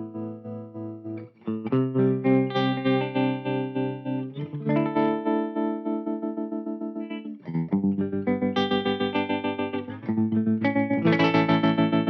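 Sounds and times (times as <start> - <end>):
electric guitar chords with tremolo: 0.0 - 12.0.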